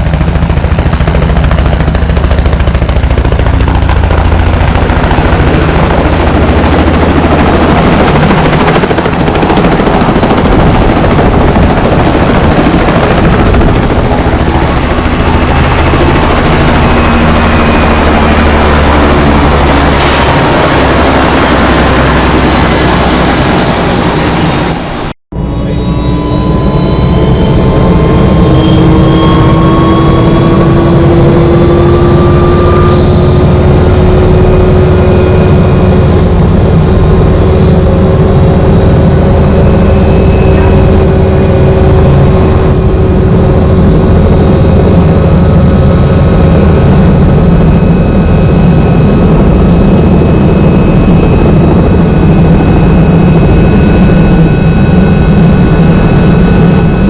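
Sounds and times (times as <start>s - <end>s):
helicopter engine and rotor: 0.0s - 57.0s.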